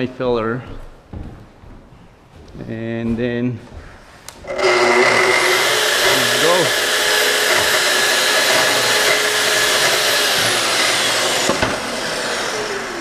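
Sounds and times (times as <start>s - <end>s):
dust extractor: 4.4s - 13.0s
track saw whine: 4.4s - 13.0s.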